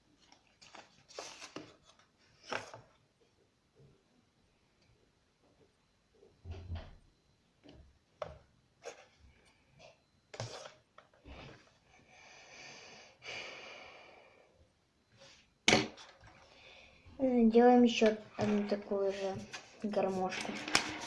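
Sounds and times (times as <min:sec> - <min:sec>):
paper being folded and creased: 0:18.4 - 0:21.0.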